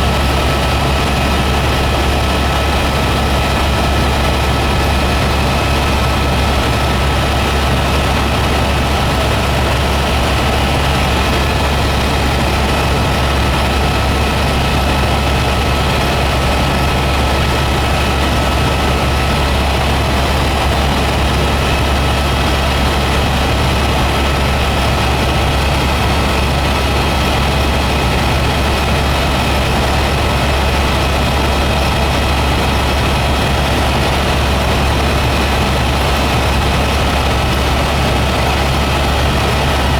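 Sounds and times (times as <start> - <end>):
helicopter rotor drone: 0.0 - 39.9.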